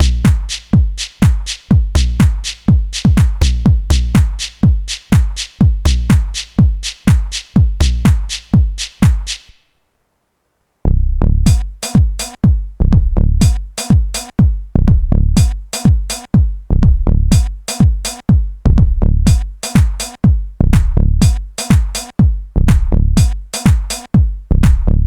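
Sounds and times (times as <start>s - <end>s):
booming drum machine kick: 0.0s - 9.5s, 11.4s - 25.0s
house music: 0.0s - 9.5s, 11.4s - 25.0s.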